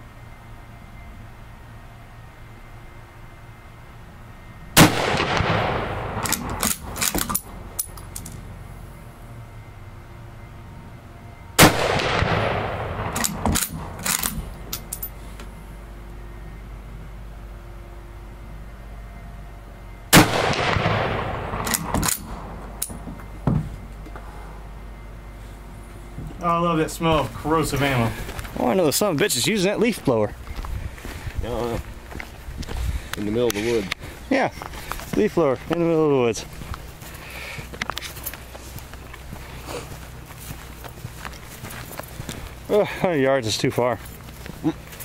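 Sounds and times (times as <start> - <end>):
rifle shot echoing: 4.8 - 7.1, 11.6 - 14.3, 20.1 - 23.0
rifle bolt clacking: 6.2 - 8.4, 13.1 - 15.1
thump: 23.4 - 23.8.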